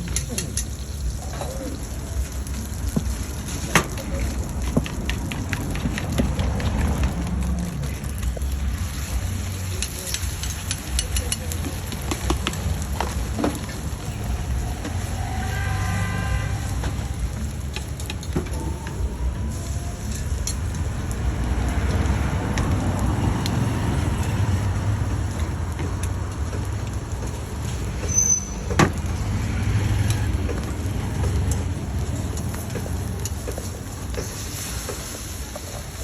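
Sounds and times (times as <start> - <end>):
traffic rumble: 0.0 - 36.0.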